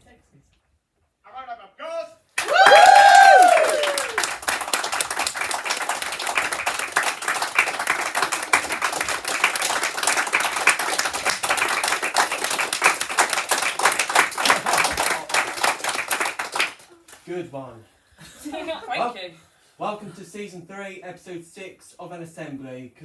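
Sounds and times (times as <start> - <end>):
people clapping: 2.4 - 17.3.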